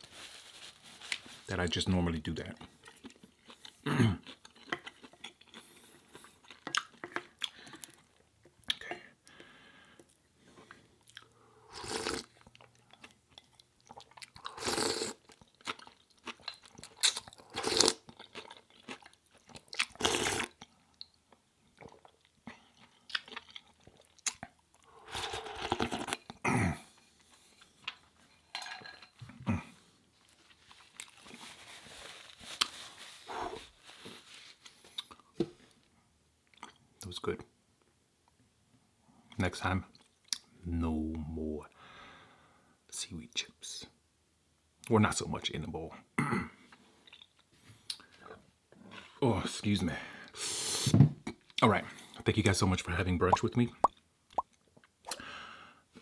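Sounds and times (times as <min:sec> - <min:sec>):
chewing and crunching: 0:02.5 - 0:08.8, 0:12.0 - 0:26.4.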